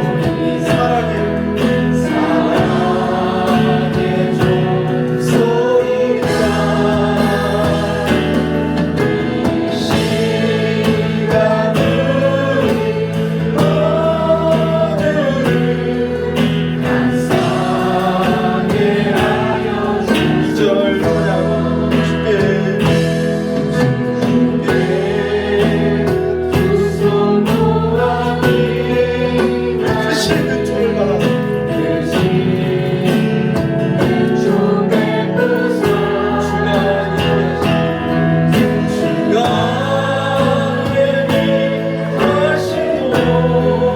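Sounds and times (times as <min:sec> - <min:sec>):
instrumental accompaniment: 0:00.0 - 0:43.9
voices singing a slow hymn: 0:00.0 - 0:43.9.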